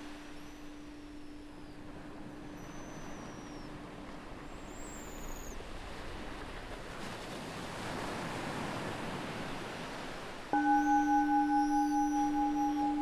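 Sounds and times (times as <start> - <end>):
meditation bell ringing: 10.6 - 13.0.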